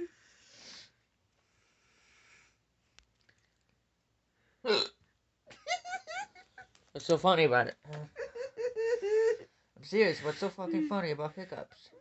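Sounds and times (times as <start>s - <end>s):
person hiccuping: 4.7s - 5.0s.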